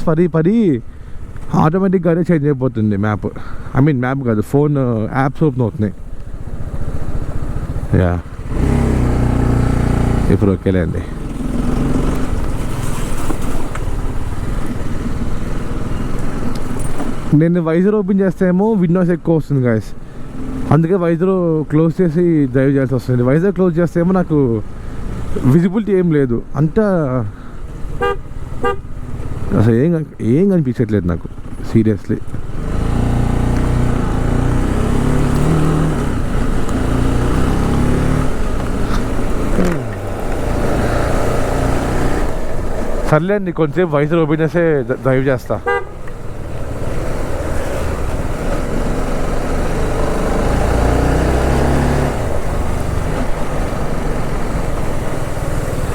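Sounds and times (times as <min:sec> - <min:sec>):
motorcycle engine running: 0:06.0 - 0:17.3, 0:27.7 - 0:29.6, 0:31.3 - 0:43.1, 0:45.6 - 0:55.9
rain noise: 0:32.4 - 0:43.2, 0:45.9 - 0:55.9.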